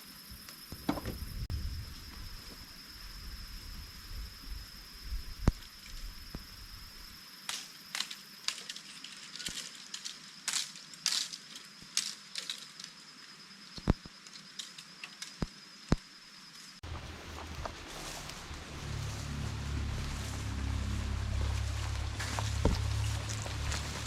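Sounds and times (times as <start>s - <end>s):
steady high-pitched whine: 0.0s - 24.0s
outdoor rustling: 7.5s - 15.6s, 16.4s - 24.0s.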